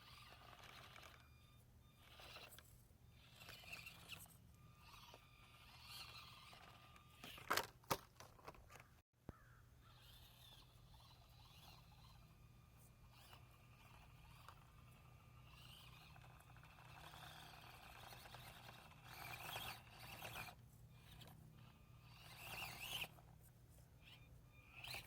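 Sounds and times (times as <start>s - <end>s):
toy car electric motor whirring: 0.0s - 8.9s, 9.8s - 25.0s
steady low hum: 9.3s - 25.0s.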